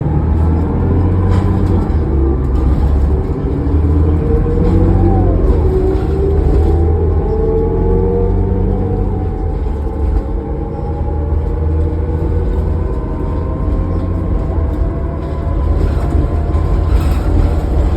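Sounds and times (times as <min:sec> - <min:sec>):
bus engine drone: 0:00.0 - 0:17.9.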